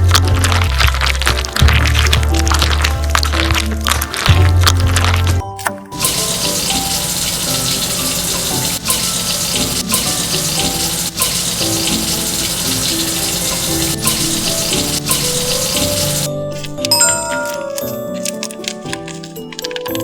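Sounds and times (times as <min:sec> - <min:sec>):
soft background music: 0:00.0 - 0:20.0
water running from a tap: 0:05.9 - 0:16.3.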